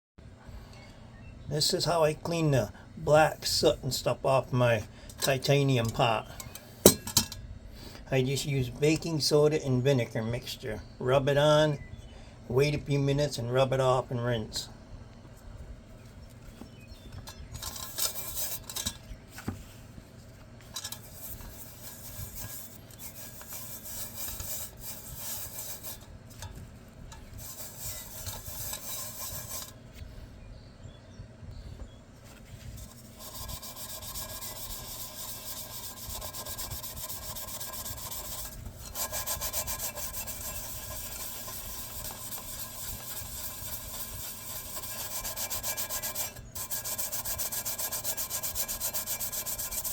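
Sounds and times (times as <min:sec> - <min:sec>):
sponge scrubbing metal pot: 0:17.4 - 0:19.0, 0:20.7 - 0:26.6, 0:27.2 - 0:29.8, 0:32.8 - 0:49.9.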